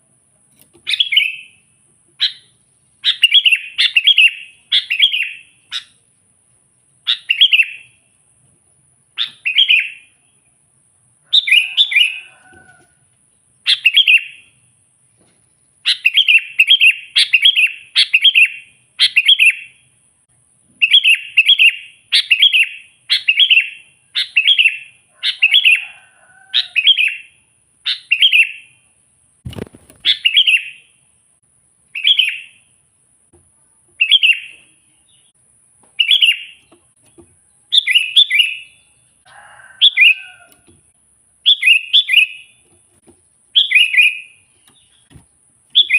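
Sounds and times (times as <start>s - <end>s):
bulbul chirping calls: 0.8s - 6.0s, 7.0s - 8.0s, 9.1s - 10.2s, 11.3s - 12.4s, 13.6s - 14.6s, 15.8s - 19.8s, 20.8s - 26.0s, 26.6s - 28.8s, 30.0s - 31.0s, 31.9s - 32.7s, 34.0s - 36.8s, 37.7s - 39.2s, 39.8s - 40.6s, 41.4s - 42.6s, 43.5s - 45.1s.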